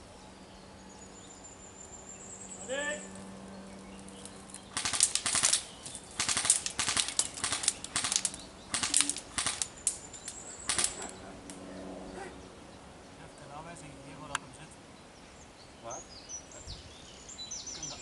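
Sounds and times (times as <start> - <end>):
airsoft guns firing bursts: 4.7 - 9.8, 10.6 - 11.1.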